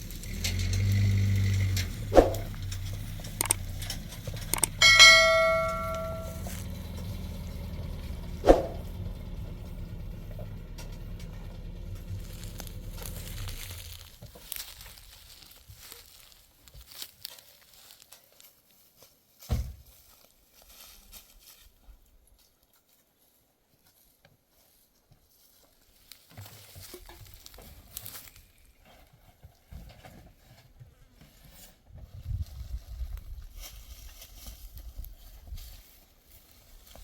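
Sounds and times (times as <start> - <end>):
sharp knocks: 4.4 - 6.6
metal bell ringing: 4.6 - 6.6.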